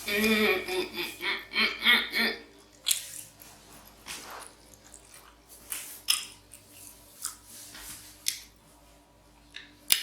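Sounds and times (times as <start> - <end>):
person chewing food: 2.5 - 8.6.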